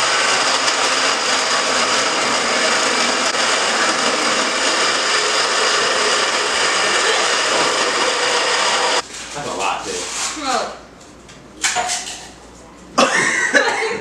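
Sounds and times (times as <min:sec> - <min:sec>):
blender running: 0:00.0 - 0:09.0.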